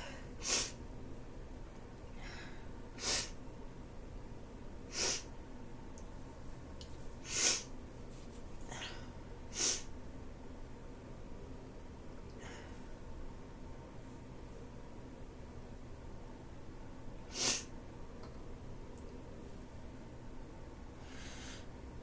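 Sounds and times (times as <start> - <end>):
person sniffling: 4.9 - 5.3, 17.3 - 17.7.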